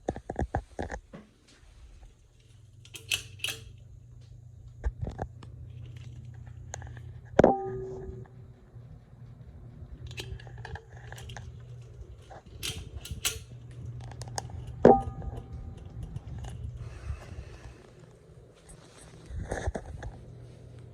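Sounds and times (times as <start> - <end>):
ceiling fan humming: 0.0 - 20.9
clicks and knocks: 10.0 - 16.7.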